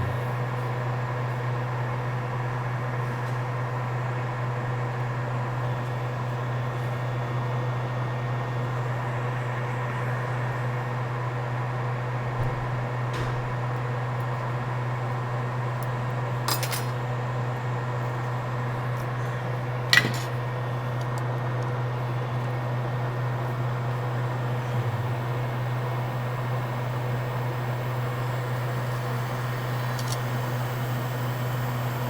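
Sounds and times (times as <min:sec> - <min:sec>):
low hum of bench equipment: 0:03.1 - 0:31.3
metal tool clinking: 0:16.5 - 0:17.0, 0:19.9 - 0:21.2, 0:30.0 - 0:30.2.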